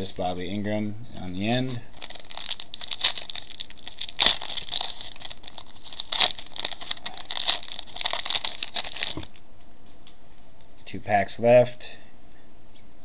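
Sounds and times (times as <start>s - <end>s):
wrapper crinkling: 1.9s - 9.4s.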